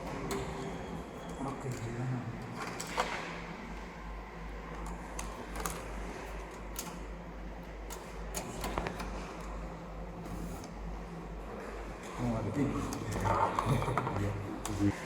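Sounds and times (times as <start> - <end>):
steady low hum: 0.0 - 15.0
computer keyboard clicks: 4.7 - 7.0.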